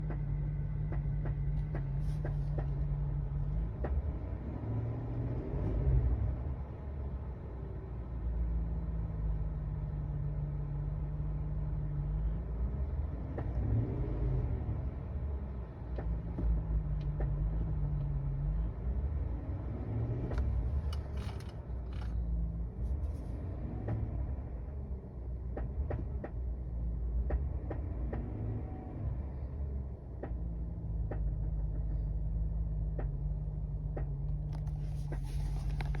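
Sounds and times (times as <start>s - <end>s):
engine knocking and ticking: 0.0s - 4.4s, 15.8s - 18.2s, 20.2s - 28.6s, 29.3s - 36.0s.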